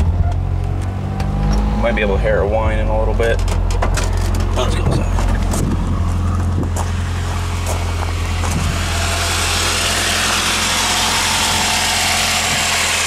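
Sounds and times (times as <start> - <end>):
alternator bearing whine: 0.0 - 13.0
car engine idling: 1.8 - 13.0.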